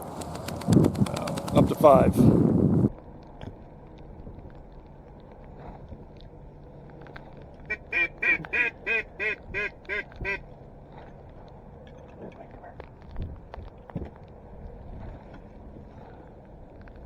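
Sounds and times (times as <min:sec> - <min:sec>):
duck quacking: 0:07.7 - 0:10.4.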